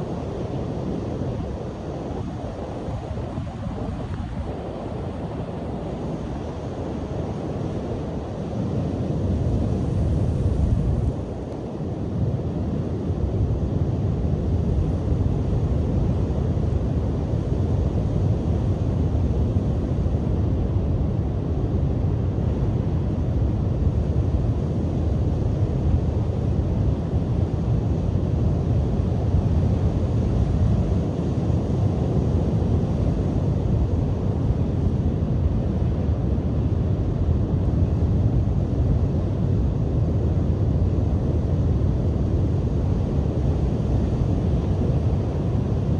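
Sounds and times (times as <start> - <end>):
strong wind on microphone: 0.0 - 45.9.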